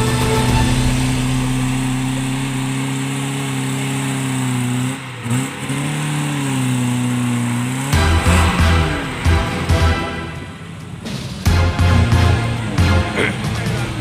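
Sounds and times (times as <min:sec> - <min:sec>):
music with heavy beat: 0:00.0 - 0:02.8, 0:08.0 - 0:14.0
engine running at high revs: 0:00.0 - 0:14.0.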